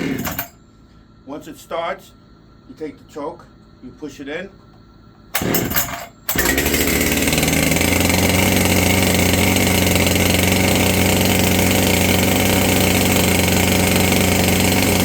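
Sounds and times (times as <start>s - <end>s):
chainsaw engine starting and running: 0.0s - 0.5s, 5.4s - 15.0s.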